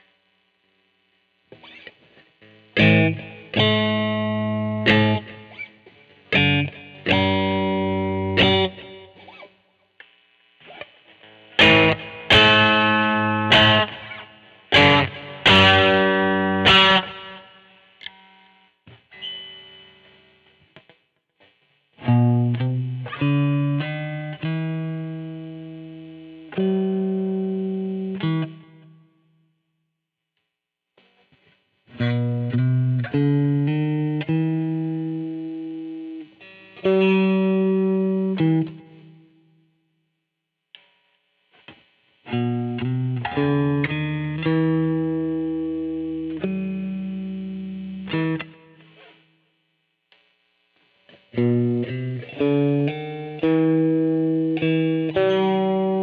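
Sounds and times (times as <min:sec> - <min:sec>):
electric guitar chords ringing: 0:01.5 - 0:09.5, 0:10.6 - 0:20.6, 0:22.0 - 0:29.1, 0:31.9 - 0:39.4, 0:42.2 - 0:49.3, 0:51.1 - 0:56.0
low electric guitar notes: 0:02.7 - 0:09.4, 0:11.4 - 0:18.2, 0:22.0 - 0:28.8, 0:31.9 - 0:39.2, 0:42.3 - 0:49.0, 0:51.3 - 0:56.0.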